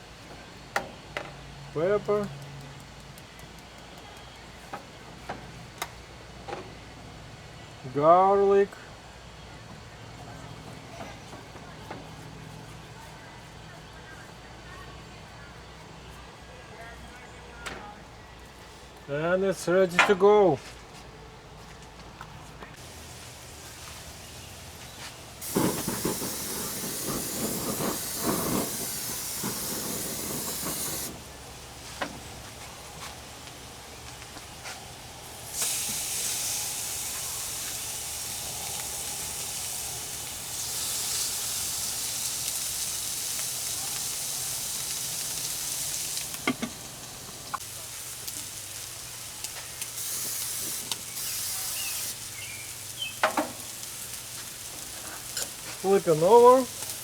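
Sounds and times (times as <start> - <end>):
meat sizzling: 22.8 - 57.0.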